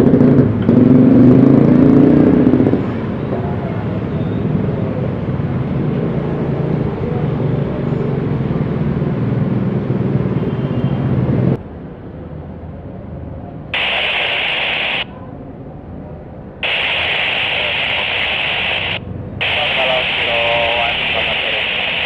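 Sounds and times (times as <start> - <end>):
jet engines rumbling: 13.8 - 15.1, 16.6 - 22.0
radio hiss: 13.8 - 15.1, 16.6 - 22.0.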